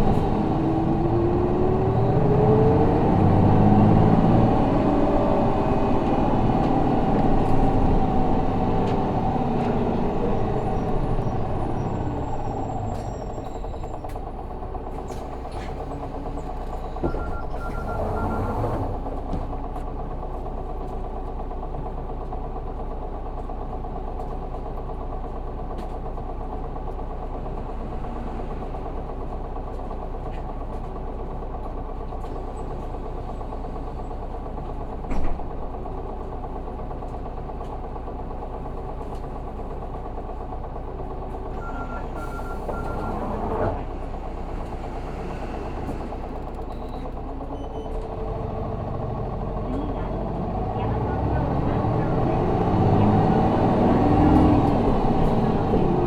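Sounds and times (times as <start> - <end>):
bus diesel engine idling: 0.0 - 56.0
high beeps: 17.0 - 18.5.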